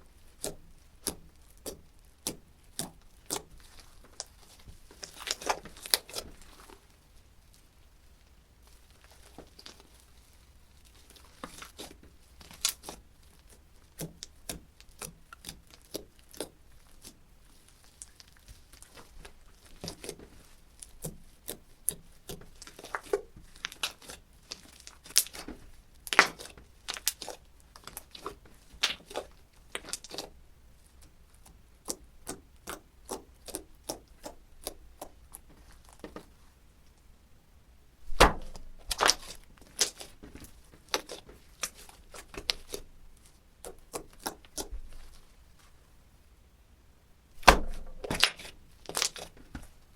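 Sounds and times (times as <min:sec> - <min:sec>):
slime squished by hand popping: 0:38.1 - 0:40.2, 0:47.4 - 0:49.4.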